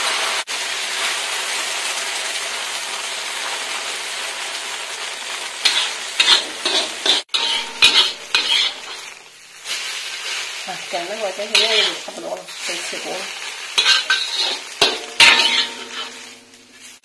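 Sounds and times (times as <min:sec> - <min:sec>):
egg sizzling in hot oil: 0:00.0 - 0:17.0
egg scraped against pan: 0:05.6 - 0:09.1, 0:11.5 - 0:12.2, 0:13.8 - 0:17.0.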